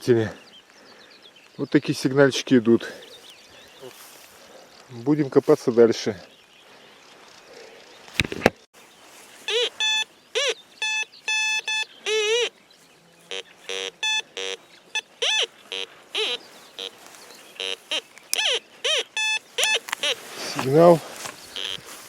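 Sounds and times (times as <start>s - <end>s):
metal detector beeps: 9.5s - 12.5s, 13.3s - 17.0s, 17.6s - 20.7s, 21.5s - 22.0s.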